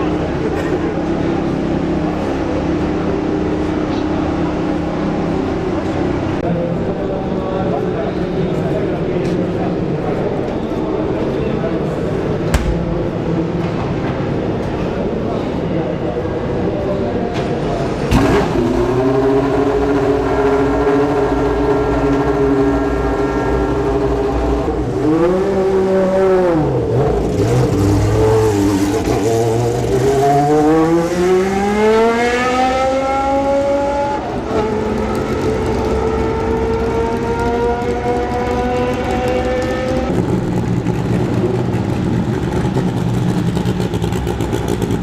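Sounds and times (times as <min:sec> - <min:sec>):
race car engine revving: 0:16.4 - 0:45.0.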